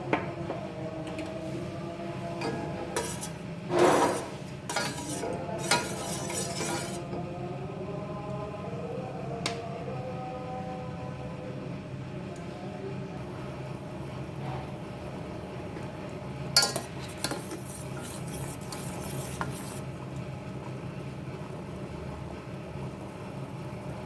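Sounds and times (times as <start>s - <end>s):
metal spoon clinking on pot: 4.7s - 7.0s, 16.6s - 18.8s.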